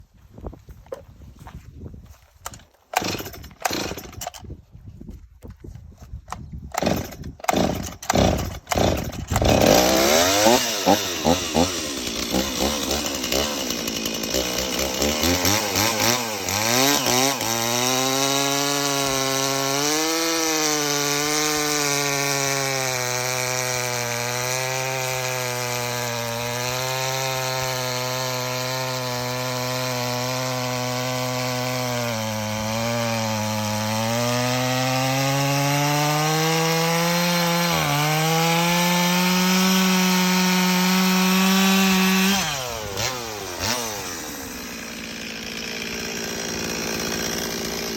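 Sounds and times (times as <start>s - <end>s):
chainsaw starting and idling: 2.4s - 4.5s, 6.3s - 47.9s.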